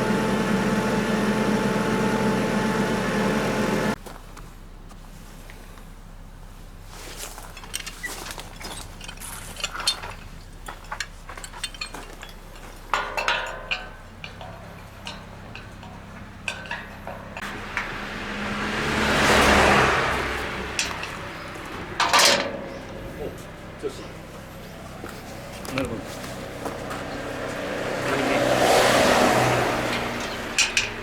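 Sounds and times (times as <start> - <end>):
metal hardware clicking and clinking: 9.0 - 17.4, 22.0 - 23.0
car passing by: 17.4 - 22.0, 24.2 - 31.0.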